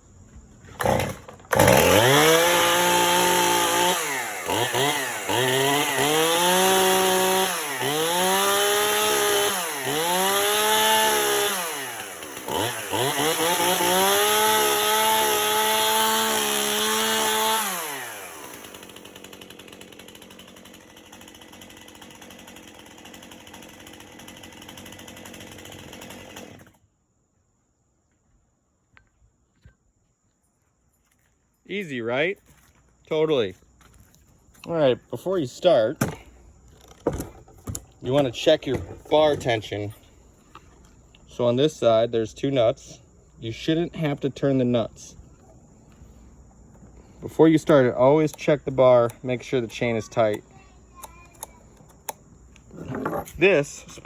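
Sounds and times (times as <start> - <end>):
chainsaw revving: 0.8 - 26.8.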